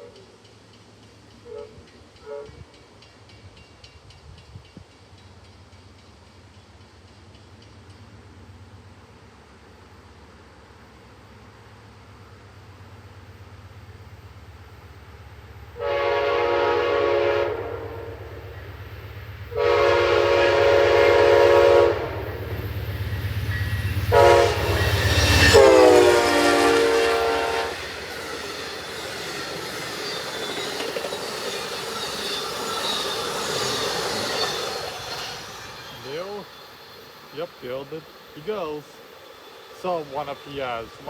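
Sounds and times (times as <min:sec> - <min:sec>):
train cars rumbling and clattering: 0:00.0 - 0:09.5, 0:12.1 - 0:41.0
train horn blasts: 0:01.4 - 0:02.8, 0:15.8 - 0:18.4, 0:19.5 - 0:22.5, 0:23.6 - 0:28.0.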